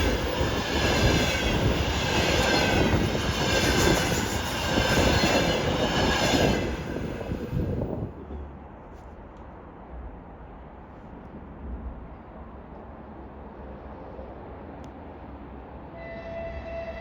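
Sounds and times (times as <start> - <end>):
train wheels rumbling: 0.0 - 8.8.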